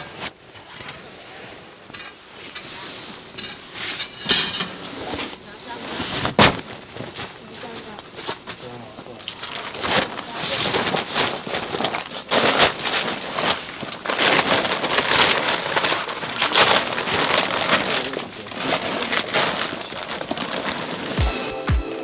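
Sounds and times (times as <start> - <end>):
material dragged rustling: 0.0 - 21.4
music beat with deep thumps: 21.2 - 22.0.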